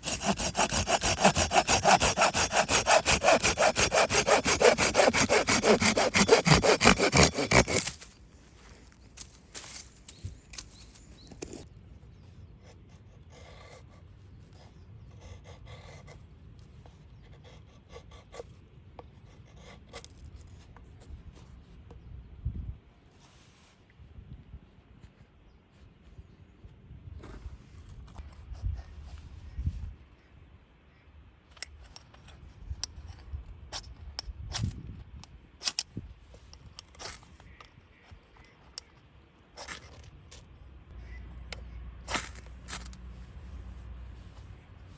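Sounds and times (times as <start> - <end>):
rasping scrapes: 0.0 - 8.1, 42.1 - 43.0.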